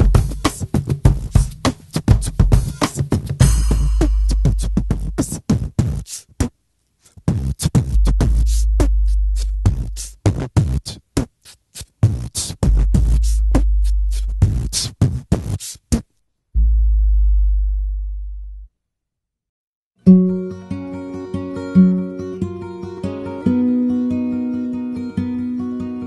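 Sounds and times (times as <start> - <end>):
deep bass notes: 3.4 - 5.2, 7.8 - 10.0, 12.6 - 14.7, 16.6 - 18.7.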